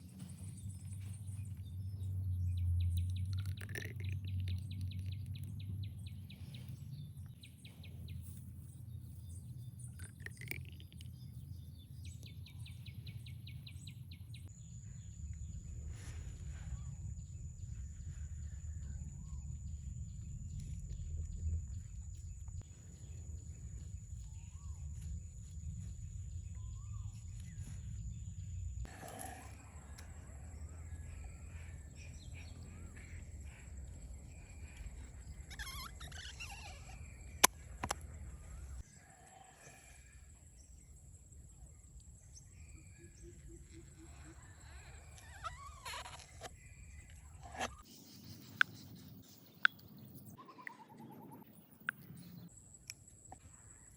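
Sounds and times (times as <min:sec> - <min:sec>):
steady low rumble: 0:14.4 - 0:28.9
birds chirping: 0:16.7 - 0:53.9.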